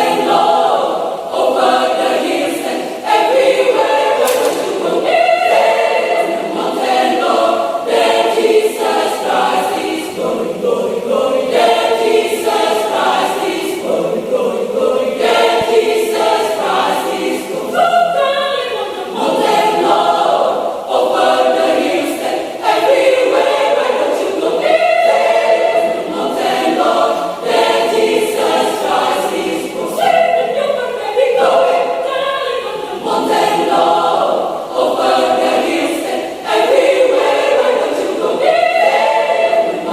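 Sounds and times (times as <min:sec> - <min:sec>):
choir singing: 0:00.0 - 0:39.9.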